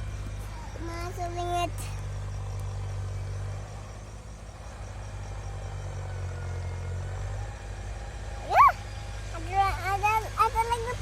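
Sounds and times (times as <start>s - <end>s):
low engine drone: 0.0s - 11.0s.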